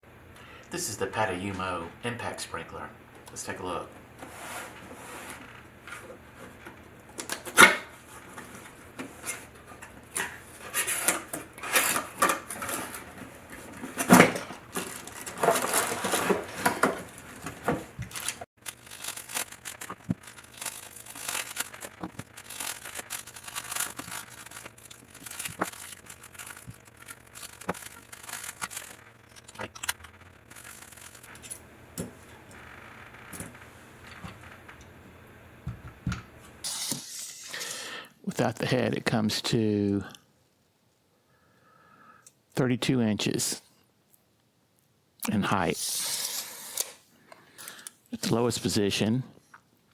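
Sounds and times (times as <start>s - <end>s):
sprinkler parts knocking and scraping: 9.8s - 32.3s.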